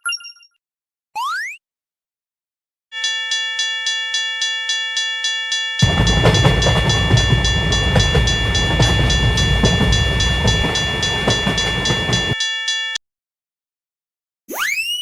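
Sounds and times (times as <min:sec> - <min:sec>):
level-crossing warning bell ringing: 0:03.0 - 0:13.0
train rumble and wheel clatter: 0:05.8 - 0:12.4.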